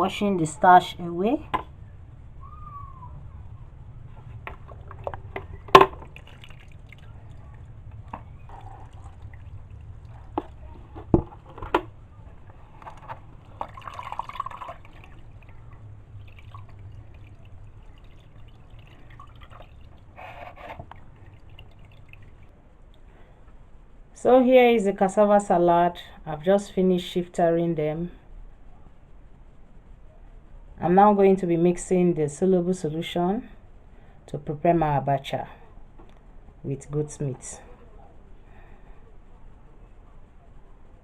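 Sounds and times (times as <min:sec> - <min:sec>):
water dripping and splashing: 0:04.6 - 0:10.9, 0:13.4 - 0:20.2, 0:20.8 - 0:22.5.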